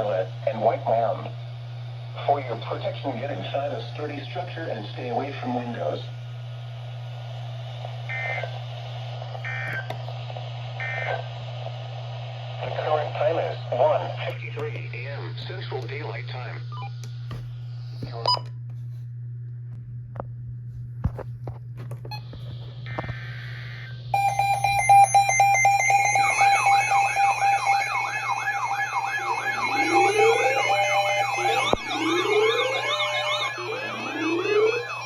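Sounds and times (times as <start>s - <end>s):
low hum: 5.6s - 35.0s
electronic alarm tone: 22.9s - 35.0s.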